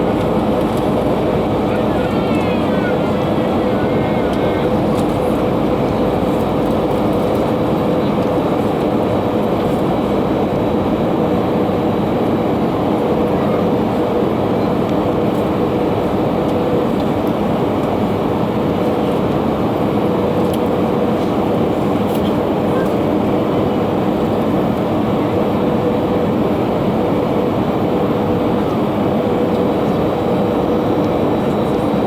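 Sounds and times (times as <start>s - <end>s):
engine and airflow rush: 0.0s - 32.0s.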